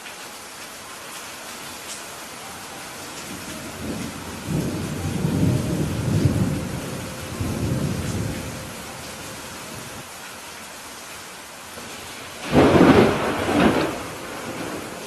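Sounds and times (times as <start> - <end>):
rain hiss: 0.0 - 15.0
thunder rumbling: 3.2 - 10.0, 11.8 - 15.0.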